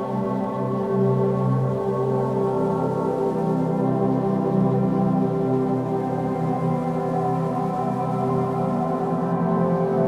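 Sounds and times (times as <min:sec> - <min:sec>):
ambient music drone: 0:00.0 - 0:10.0.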